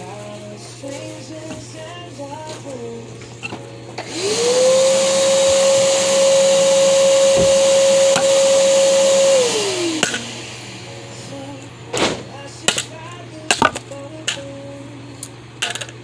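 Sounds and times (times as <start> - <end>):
electric motor spinning: 4.0 - 12.0
loud rush of air: 4.1 - 12.4.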